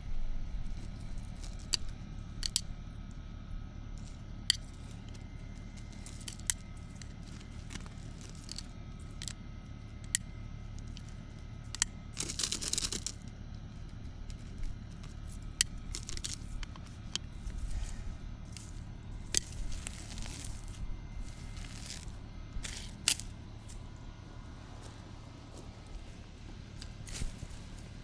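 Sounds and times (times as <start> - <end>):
rustling foliage: 0.6 - 2.7, 4.0 - 9.4, 10.8 - 28.0
plant stems snapping: 15.4 - 23.8.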